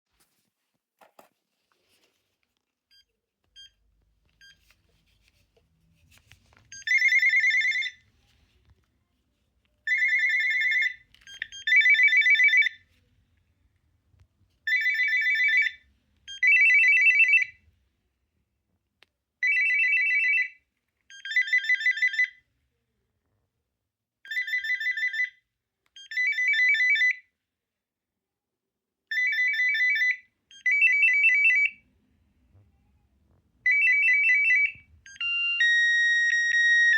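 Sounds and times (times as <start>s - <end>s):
cordless phone electronic ringtone: 6.7s - 8.1s, 9.8s - 12.8s, 14.7s - 17.6s, 19.4s - 22.5s, 24.3s - 27.3s, 29.1s - 31.8s, 33.6s - 36.9s.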